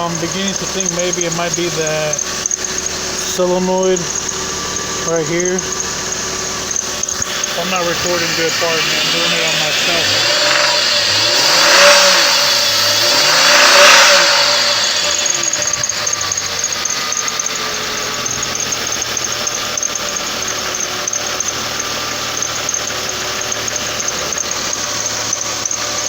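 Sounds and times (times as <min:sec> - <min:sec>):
high-pitched squeal: 0:00.0 - 0:20.0
car engine revving and idling: 0:00.0 - 0:26.0.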